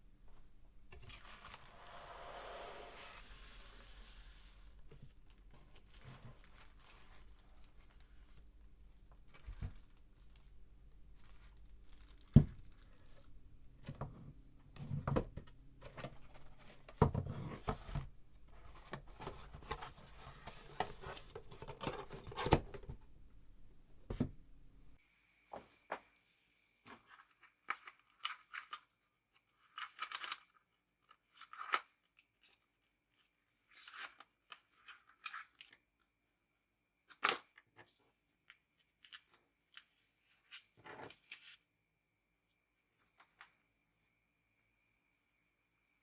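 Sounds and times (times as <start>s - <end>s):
packaging rustling and tearing: 1.0s - 8.5s.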